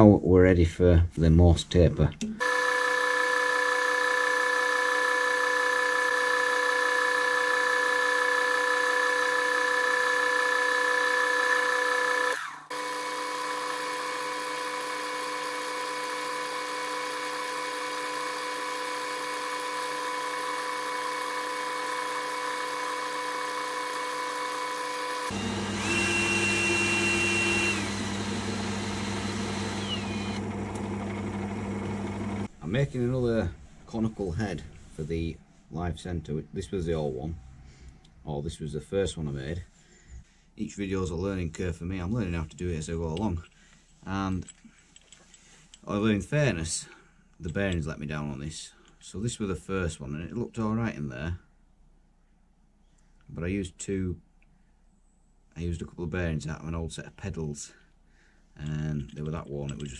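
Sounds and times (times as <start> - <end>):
lathe motor whine: 2.4 - 32.5.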